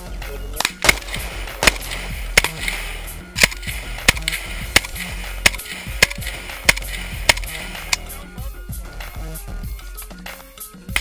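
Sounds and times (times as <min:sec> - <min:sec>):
background music with steady beat: 0:00.0 - 0:11.0
sharp hits: 0:00.6 - 0:08.2.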